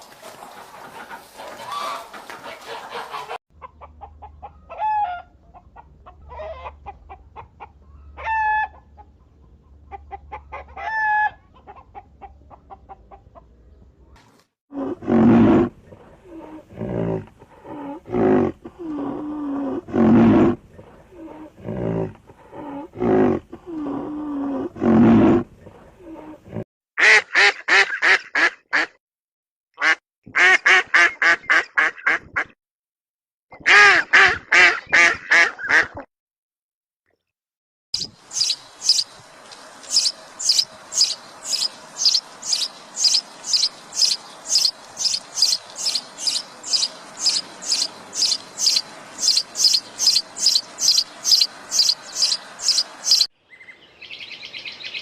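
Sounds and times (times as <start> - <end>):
hen clucking: 0.2 - 13.6, 38.0 - 53.3
duck quacks: 0.8 - 4.1, 27.0 - 29.0, 29.8 - 32.6, 33.6 - 36.1
loud low animal calls: 38.0 - 39.1, 39.8 - 53.3.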